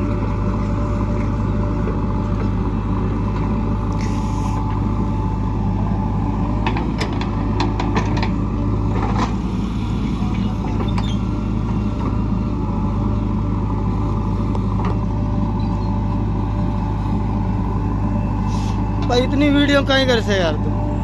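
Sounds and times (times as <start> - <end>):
diesel engine running: 0.0 - 21.0
sharp clicks and knocks: 6.6 - 9.4.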